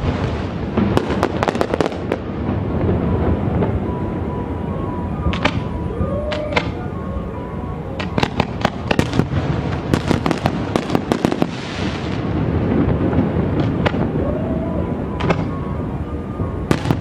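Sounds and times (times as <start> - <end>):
fireworks crackling hiss: 0.0 - 3.8, 8.4 - 17.0
fireworks bangs and cracks: 0.0 - 7.0, 8.0 - 17.0.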